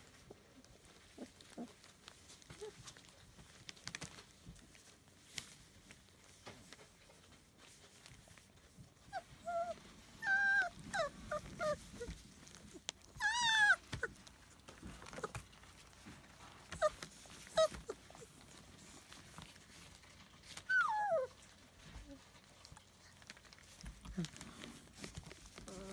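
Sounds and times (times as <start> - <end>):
puppies whining and whimpering: 9.0 - 15.9, 16.6 - 22.2, 25.4 - 25.9.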